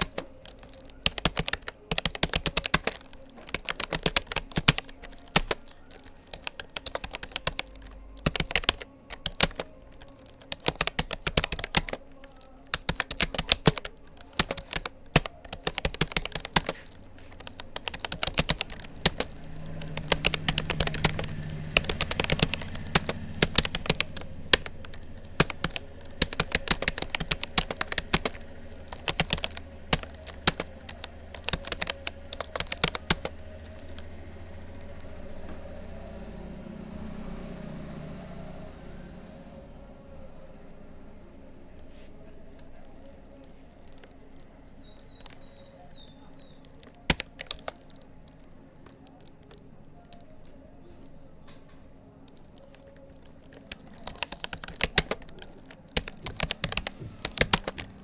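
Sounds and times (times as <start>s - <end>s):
keyboard key clicks: 0.0s - 34.1s, 46.3s - 50.6s, 51.5s - 58.0s.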